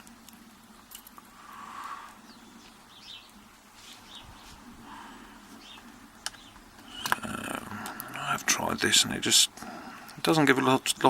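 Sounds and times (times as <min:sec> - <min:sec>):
faint bird chirps: 0:01.4 - 0:07.8.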